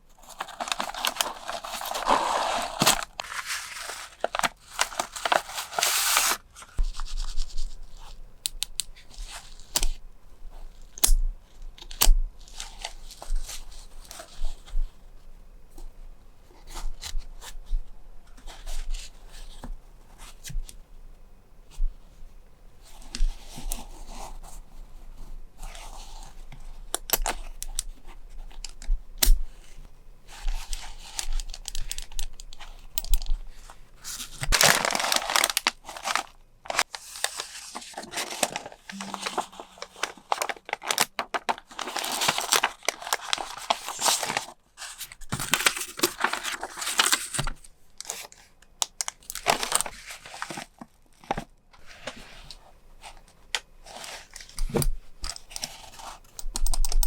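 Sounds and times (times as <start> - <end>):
packaging tearing and crinkling: 0.2 - 8.1, 30.6 - 32.4, 34.2 - 48.3, 49.0 - 50.6.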